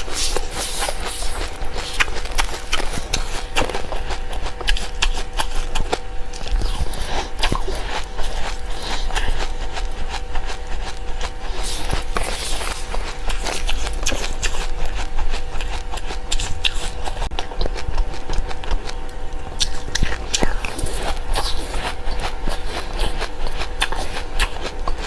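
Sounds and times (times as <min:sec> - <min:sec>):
seeds crunching: 0:00.2 - 0:17.8.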